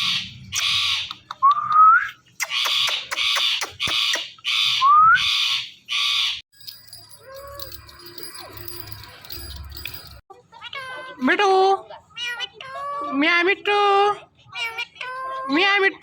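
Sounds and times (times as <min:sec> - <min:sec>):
parrots squawking: 0:00.0 - 0:01.3, 0:02.4 - 0:06.4.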